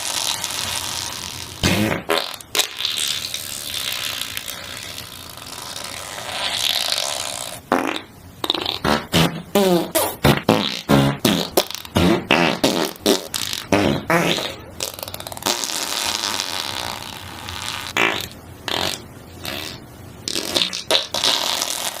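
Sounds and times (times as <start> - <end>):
long sputtering fart: 0.0 - 22.0
short pitched farts: 0.0 - 22.0.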